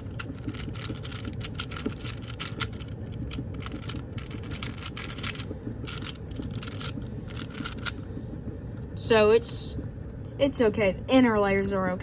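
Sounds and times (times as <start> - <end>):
plastic puzzle cube clicking: 0.0 - 3.0, 3.6 - 7.9.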